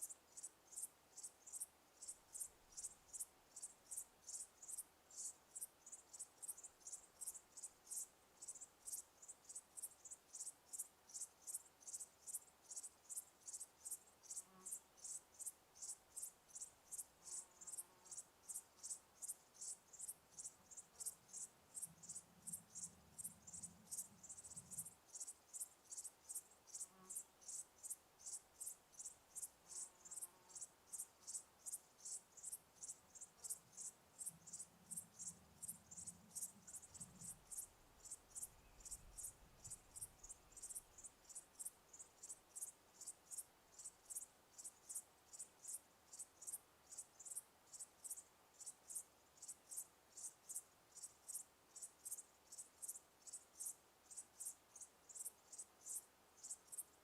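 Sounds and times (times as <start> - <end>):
cricket chirping: 0.0 - 57.0.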